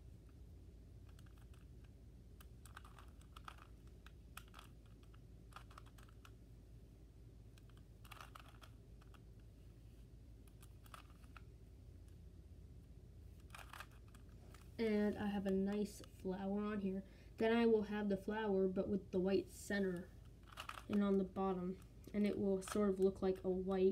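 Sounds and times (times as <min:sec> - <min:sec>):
low steady hum: 0:00.0 - 0:23.9
plastic puzzle cube clicking: 0:01.0 - 0:06.4, 0:07.5 - 0:09.5, 0:10.4 - 0:11.5, 0:13.4 - 0:14.7, 0:20.2 - 0:23.0.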